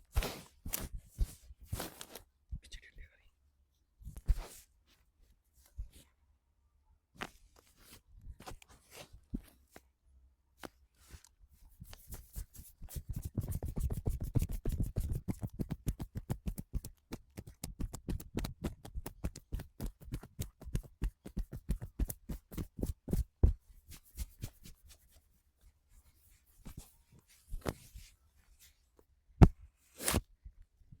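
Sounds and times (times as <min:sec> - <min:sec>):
hands slapping skin: 0:11.9 - 0:25.1.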